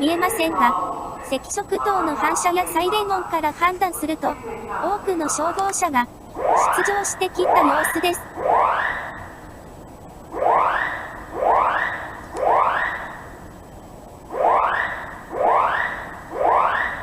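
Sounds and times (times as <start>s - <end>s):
fire alarm whoop tone: 6.4s - 9.2s, 10.4s - 13.2s, 14.3s - 17.0s.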